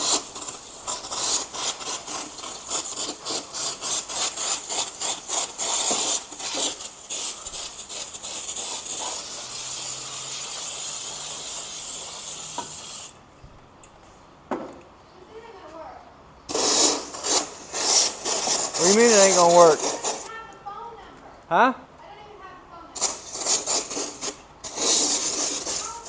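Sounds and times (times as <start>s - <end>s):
aerosol spray spurts: 0.0s - 13.2s, 16.5s - 20.3s, 23.0s - 26.0s.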